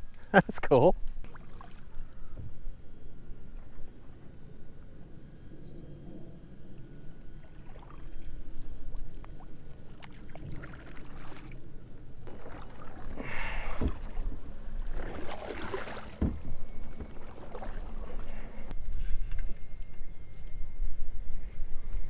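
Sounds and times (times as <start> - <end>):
steady low rumble: 0.9 - 15.2
paddle strokes splashing water: 7.4 - 11.6, 12.2 - 18.7.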